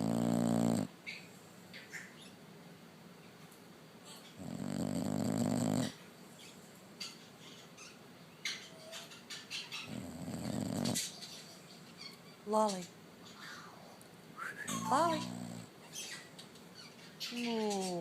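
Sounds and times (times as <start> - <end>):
pet snoring: 0.0 - 0.9, 4.4 - 6.0, 9.8 - 11.1, 14.7 - 15.7.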